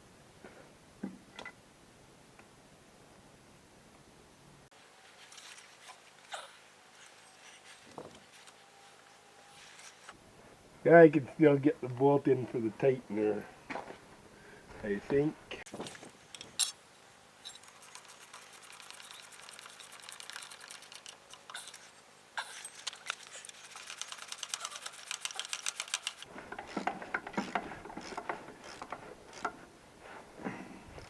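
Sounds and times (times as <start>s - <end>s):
metal tools knocking and clinking: 16.4s - 16.8s
ratchet wrench clicking: 22.8s - 26.2s.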